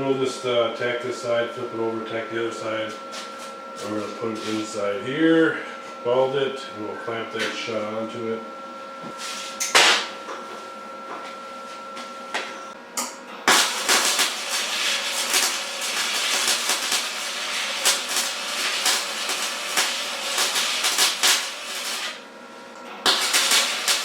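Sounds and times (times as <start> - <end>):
welding arc crackling: 13.5 - 22.3, 23.0 - 24.0.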